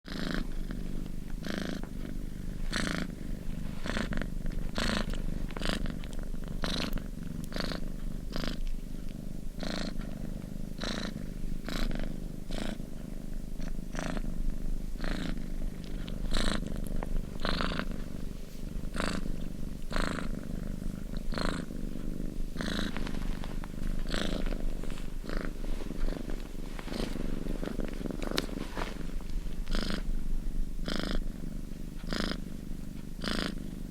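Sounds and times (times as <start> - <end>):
cat purring: 0.0 - 33.9.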